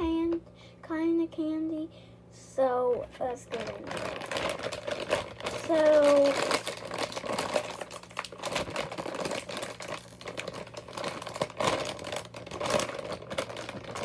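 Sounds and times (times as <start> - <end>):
plastic packaging crinkling: 3.2 - 14.0.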